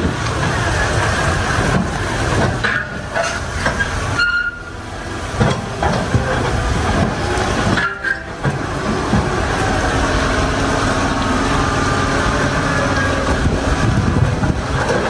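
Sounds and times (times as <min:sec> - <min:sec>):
heavy trucks on rough road: 0:00.0 - 0:15.0
rattling and clanking: 0:00.0 - 0:15.0
high squeal: 0:03.1 - 0:04.8.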